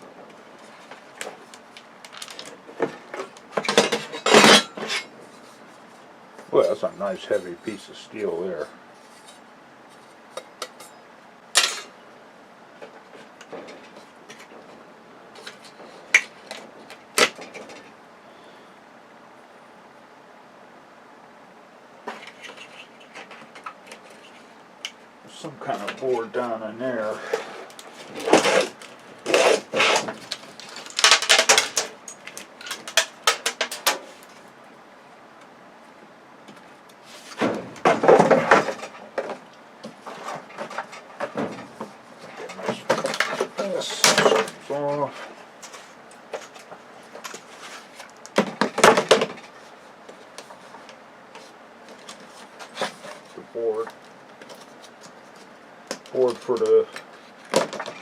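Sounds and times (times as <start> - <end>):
metal parts clanking: 3.6 - 5.1.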